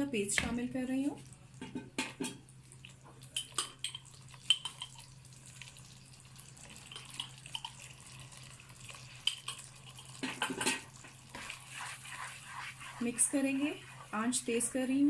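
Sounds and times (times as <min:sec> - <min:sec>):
spoon knocking and scraping pan: 0:01.6 - 0:02.4, 0:10.2 - 0:14.2
paste sizzling in a pan: 0:04.1 - 0:15.0.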